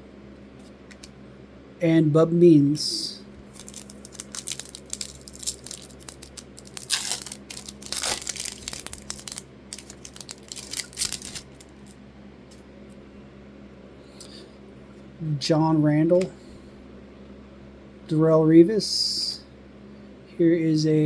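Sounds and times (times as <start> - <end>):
wrapper tearing and crinkling: 3.5 - 12.0
cards being handled: 3.5 - 12.6.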